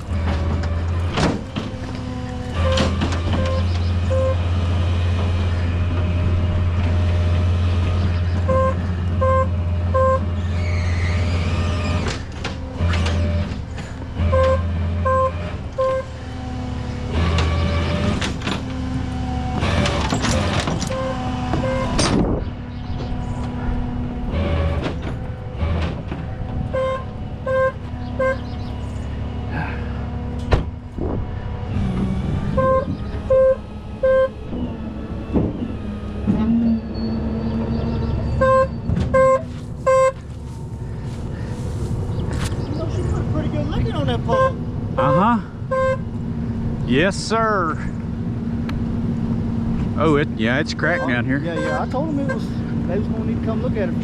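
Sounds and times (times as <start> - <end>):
metal clanks and knocks: 0.0 - 4.4, 11.9 - 16.0, 17.2 - 22.4, 24.2 - 28.9
truck engine humming: 0.0 - 54.0.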